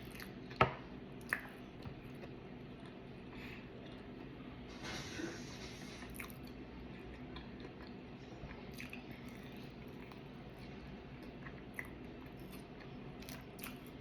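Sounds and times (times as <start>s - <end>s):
low background hum: 0.0s - 14.0s
wet chewing: 6.1s - 14.0s.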